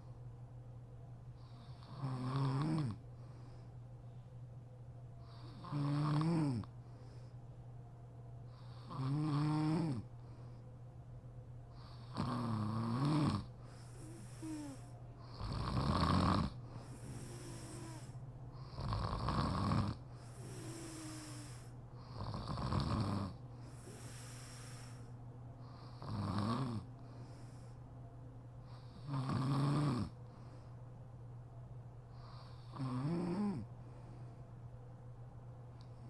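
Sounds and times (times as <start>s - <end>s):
woman snoring: 1.5s - 3.0s, 5.3s - 6.7s, 8.6s - 10.1s, 11.8s - 25.1s, 25.9s - 26.9s, 28.8s - 30.2s, 32.3s - 33.7s.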